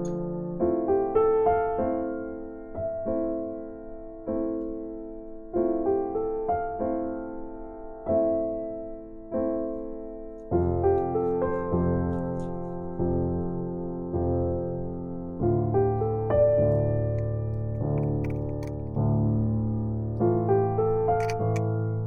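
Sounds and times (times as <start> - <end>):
soft piano music: 0.0 - 22.0.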